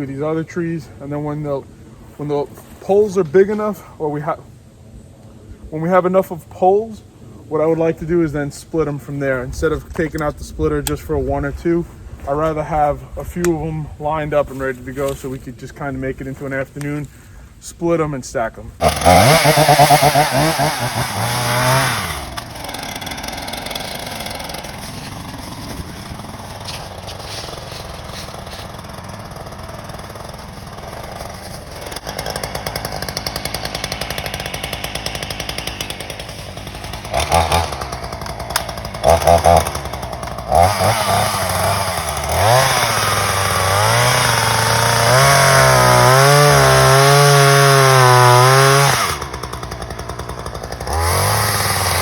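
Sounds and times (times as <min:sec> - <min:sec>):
chainsaw idling and revving: 0:18.8 - 0:52.0.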